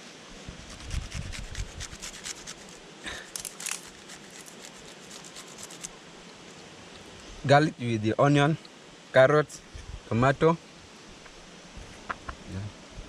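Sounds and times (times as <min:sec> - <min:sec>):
rubbing and scraping strokes: 0:00.5 - 0:06.0.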